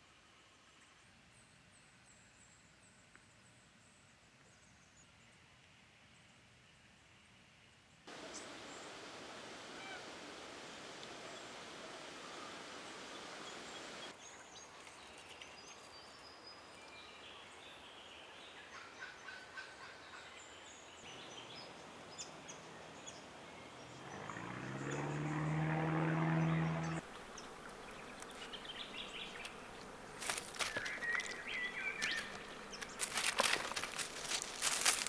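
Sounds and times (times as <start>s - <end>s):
birds chirping: 8.1s - 14.1s, 21.0s - 35.0s
loud low buzz rising in pitch: 24.0s - 27.0s.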